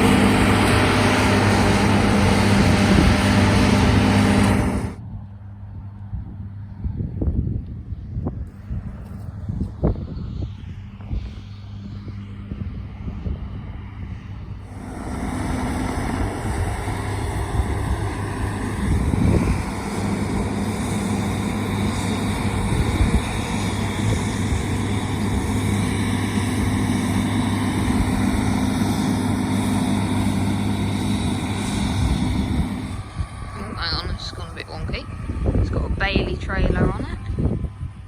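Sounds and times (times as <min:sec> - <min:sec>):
threshing machinery whirring: 0:00.0 - 0:05.0, 0:14.6 - 0:38.0
combine harvester engine drone: 0:00.0 - 0:38.0.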